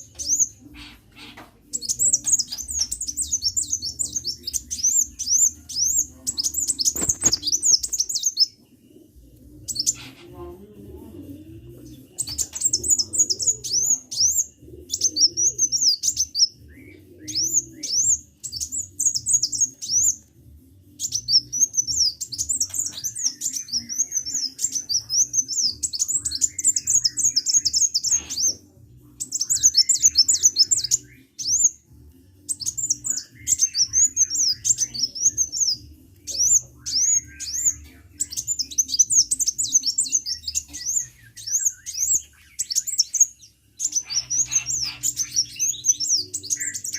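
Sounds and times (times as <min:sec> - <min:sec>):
bird high-pitched chirps: 0:32.5 - 0:46.9.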